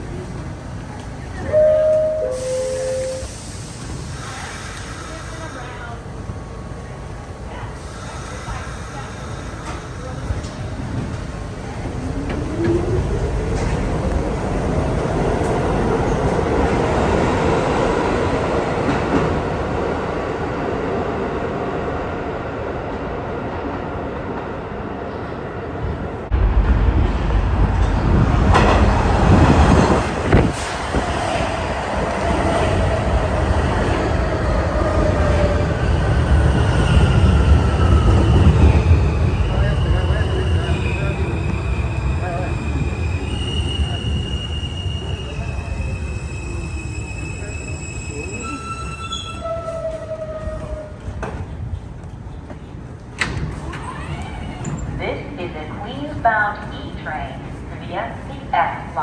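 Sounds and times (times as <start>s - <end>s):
subway train rumbling: 0.0s - 59.0s
wheel and brake squeal: 42.8s - 50.2s.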